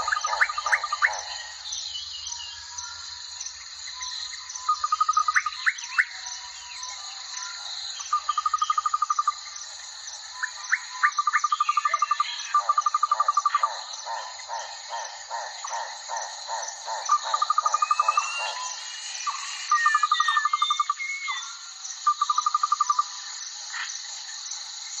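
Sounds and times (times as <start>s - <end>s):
lower falling calls: 0.0s - 2.4s
insects chirping: 0.0s - 25.0s.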